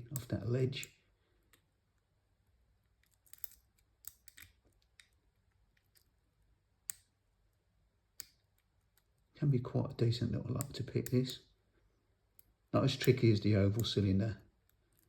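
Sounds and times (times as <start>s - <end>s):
lock pick clicking and scraping: 2.8s - 6.2s, 8.1s - 9.3s, 14.6s - 15.0s.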